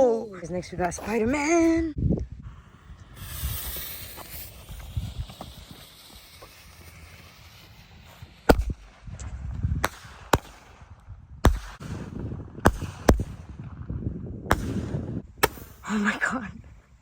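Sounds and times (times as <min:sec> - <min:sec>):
low rumble: 0:00.4 - 0:15.3
fireworks bangs: 0:02.4 - 0:13.7, 0:14.5 - 0:15.8.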